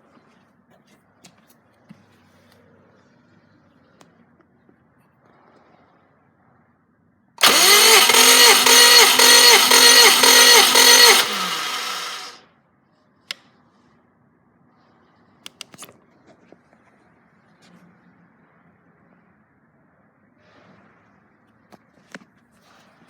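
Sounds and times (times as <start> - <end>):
sharp clicks: 7.4 - 12.4
starter motor cranking engine: 7.4 - 12.4.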